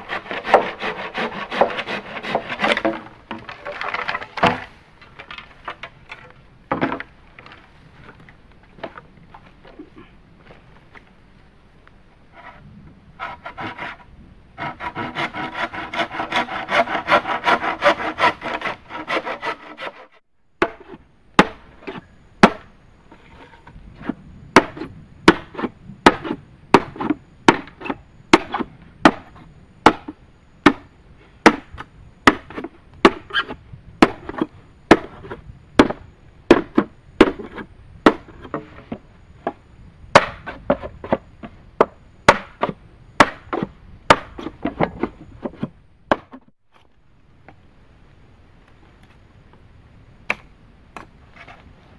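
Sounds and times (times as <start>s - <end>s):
hand saw cutting bamboo: 0.0s - 3.0s, 13.2s - 14.0s, 14.6s - 20.2s
chopping strikes on wood: 20.6s - 21.6s, 22.4s - 22.7s, 24.6s - 27.8s, 28.4s - 29.3s, 29.9s - 33.3s, 35.8s - 37.5s, 40.2s - 41.2s, 41.8s - 45.0s, 50.3s - 51.1s.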